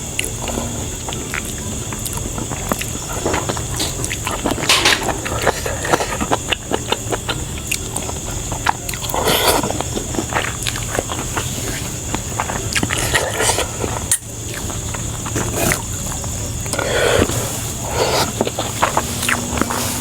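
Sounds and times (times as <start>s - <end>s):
chewing: 0.0s - 20.0s
steady background hum: 0.0s - 20.0s
loud rustling: 14.7s - 20.0s.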